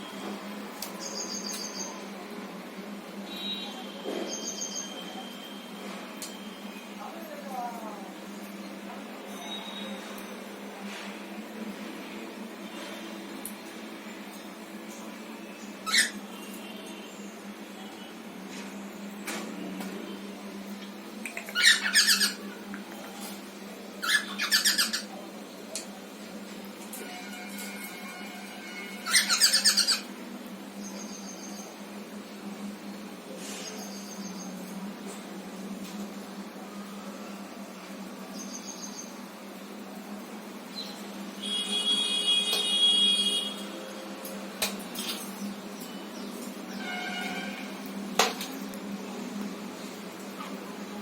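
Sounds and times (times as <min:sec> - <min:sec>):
cockatiels calling: 0:15.8 - 0:16.2, 0:21.5 - 0:22.4, 0:24.0 - 0:25.1, 0:29.0 - 0:30.1
cockatiel long steady call: 0:29.0 - 0:30.0.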